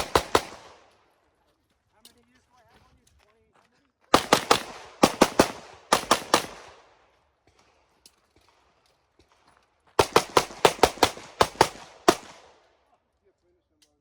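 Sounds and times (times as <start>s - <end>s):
rapid pistol shots: 0.0s - 0.9s, 4.1s - 7.0s, 10.0s - 12.7s.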